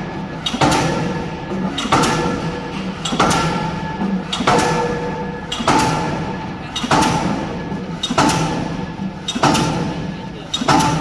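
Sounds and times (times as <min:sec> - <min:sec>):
pile hammer striking concrete pile: 0:09.4 - 0:09.9.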